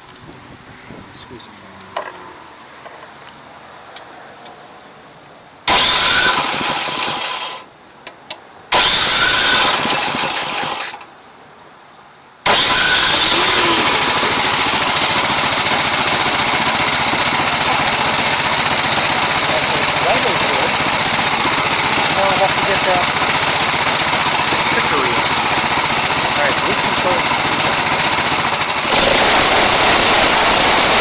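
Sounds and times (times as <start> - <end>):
snow blower engine starting: 5.7 - 7.6, 8.7 - 11.1, 12.4 - 31.0.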